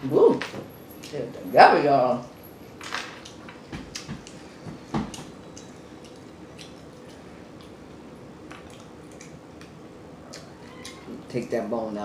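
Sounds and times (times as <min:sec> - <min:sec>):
wet mouth smacking and chewing: 0:05.1 - 0:07.8, 0:08.4 - 0:11.0.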